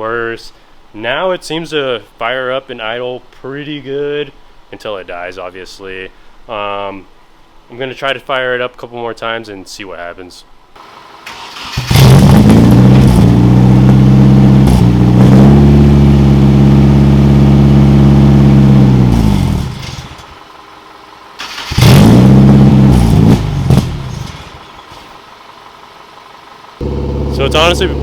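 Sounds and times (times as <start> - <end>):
car engine starting and stalling: 10.8 - 28.0.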